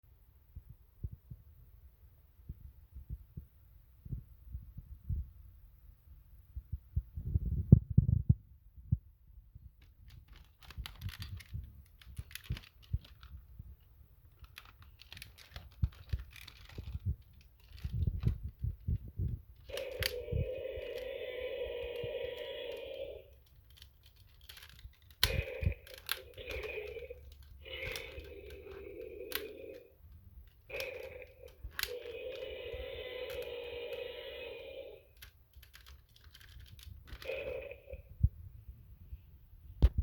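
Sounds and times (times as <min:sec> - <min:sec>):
electronic dinosaur roar: 0:19.7 - 0:23.3, 0:25.3 - 0:29.9, 0:30.7 - 0:35.1.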